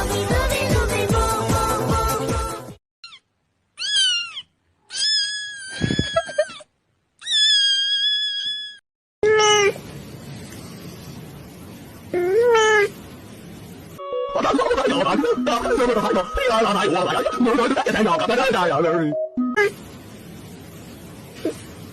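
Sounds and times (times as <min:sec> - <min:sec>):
background music: 0:00.0 - 0:02.8
cat meowing: 0:03.0 - 0:06.6, 0:07.2 - 0:09.8.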